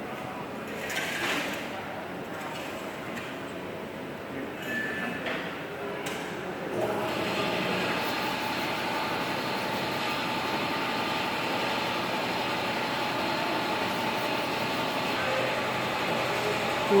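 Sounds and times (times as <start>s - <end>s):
machine whirring with whine: 6.7s - 17.0s.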